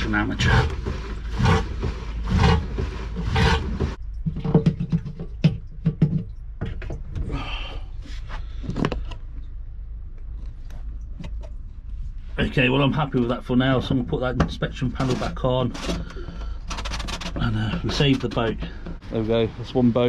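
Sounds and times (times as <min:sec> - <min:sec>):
hand pump whooshing strokes: 0:00.0 - 0:04.0
knocks and clatter: 0:00.0 - 0:07.3.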